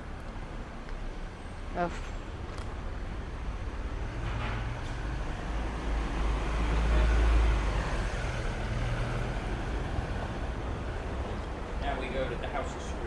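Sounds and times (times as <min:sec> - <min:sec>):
traffic noise: 0:00.0 - 0:13.0
vehicle passing: 0:03.4 - 0:13.0.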